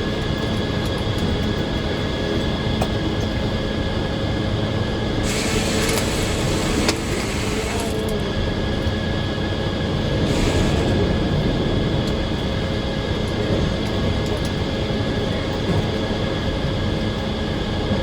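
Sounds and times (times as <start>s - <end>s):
circular sawmill droning: 4.9s - 13.0s.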